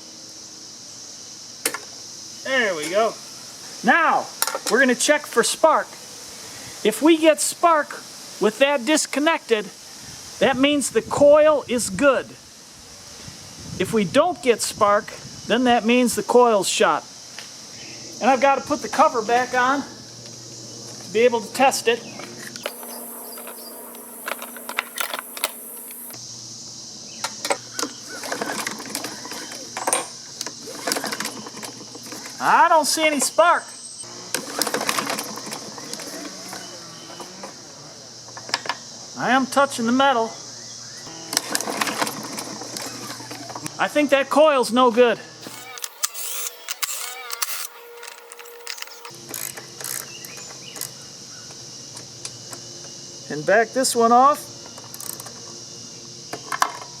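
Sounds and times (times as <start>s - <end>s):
faint steady hum: 22.6s - 26.2s
parts clicking and rattling: 22.6s - 26.2s, 45.4s - 50.0s.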